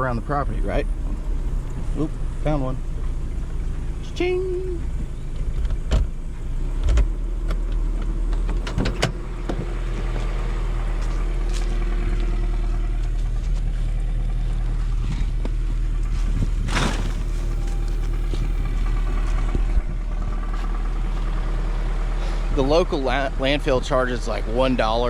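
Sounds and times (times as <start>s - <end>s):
engine running: 0.0s - 25.0s.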